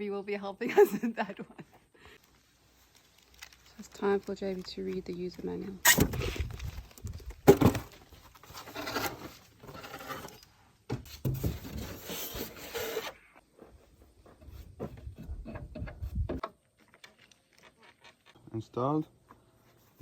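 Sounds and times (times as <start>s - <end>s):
paper rustling and crinkling: 2.2s - 10.3s.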